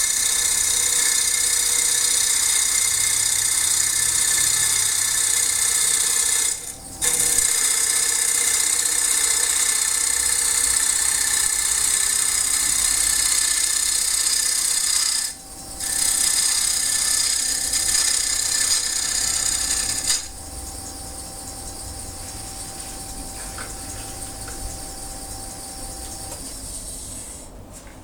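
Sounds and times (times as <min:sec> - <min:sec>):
lathe hum and whine: 0:00.0 - 0:27.7
gouge rasping on wooden bowl: 0:03.9 - 0:24.6.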